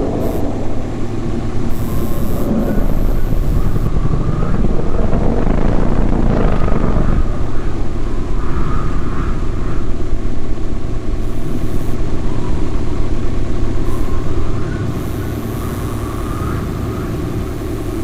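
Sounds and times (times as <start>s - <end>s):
high hiss: 0.0s - 4.6s
faint warbling tones: 0.0s - 18.0s
low rumbling drone: 0.0s - 18.0s.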